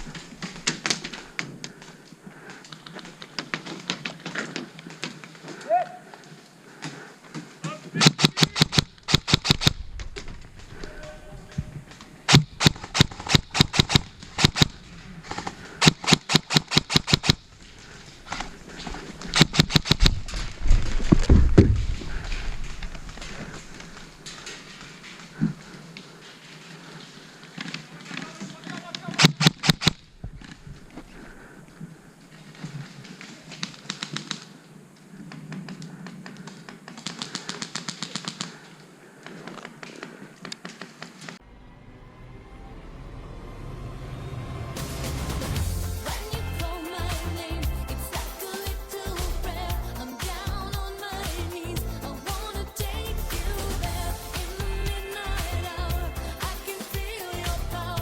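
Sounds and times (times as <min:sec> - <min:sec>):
airsoft gun shots: 0:08.0 - 0:09.9, 0:12.3 - 0:14.8, 0:15.8 - 0:17.4, 0:19.4 - 0:20.2, 0:29.2 - 0:30.0
rustle of movement: 0:17.4 - 0:29.2
low rumble: 0:41.4 - 0:46.6.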